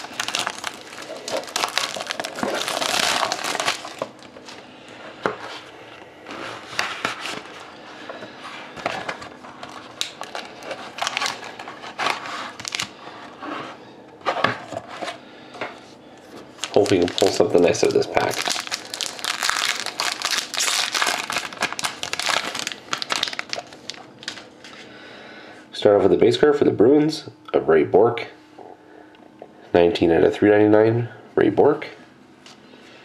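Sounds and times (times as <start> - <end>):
plastic wrapping crinkling: 0.0 - 4.6, 8.8 - 12.9, 16.5 - 24.5.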